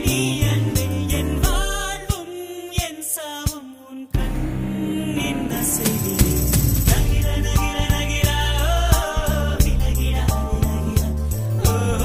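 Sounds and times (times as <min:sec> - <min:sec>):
music with singing and a beat: 0:00.0 - 0:12.0.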